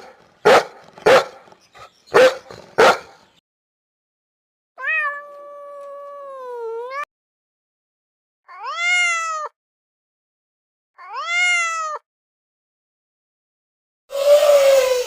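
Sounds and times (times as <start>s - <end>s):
cat meowing: 4.8s - 7.1s, 8.5s - 9.6s, 11.0s - 12.0s
long animal call: 14.1s - 15.0s.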